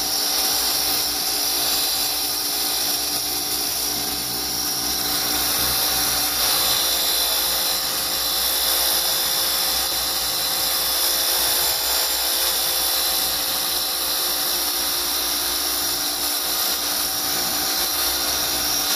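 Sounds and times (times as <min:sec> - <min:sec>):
pressure washer motor whine: 0:00.0 - 0:18.9.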